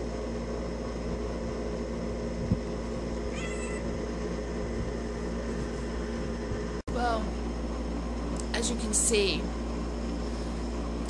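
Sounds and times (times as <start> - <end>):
room hum: 0.0 - 11.0
cat meowing: 3.3 - 3.9
cats play-fighting: 3.3 - 3.9.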